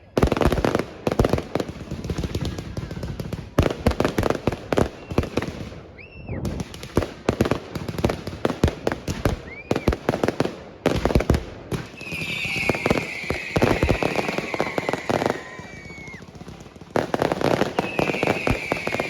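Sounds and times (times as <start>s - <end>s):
fireworks bangs and crackles: 0.0s - 19.0s
fireworks whistles: 4.8s - 6.6s, 9.3s - 10.0s, 11.8s - 16.4s, 17.1s - 19.0s
high hissing whistle: 12.0s - 16.1s, 17.8s - 19.0s.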